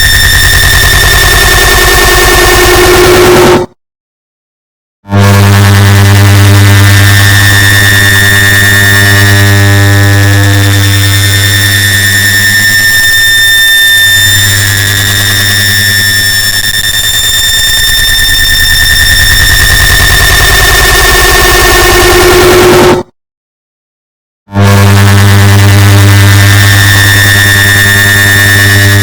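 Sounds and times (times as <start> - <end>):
high whines: 0.0 - 3.7, 5.2 - 23.1, 24.6 - 29.0
distorted electrical hum: 5.2 - 22.9, 24.6 - 29.0.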